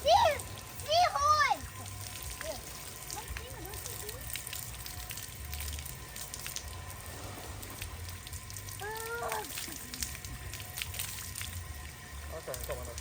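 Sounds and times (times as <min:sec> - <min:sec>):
shower water spraying: 0:00.0 - 0:13.0
person going ooh: 0:08.8 - 0:09.9.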